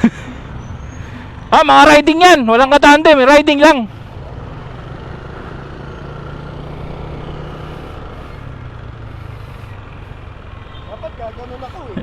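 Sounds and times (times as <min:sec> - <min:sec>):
road and wind noise: 0:00.0 - 0:12.0
motor scooter engine running: 0:03.9 - 0:12.0.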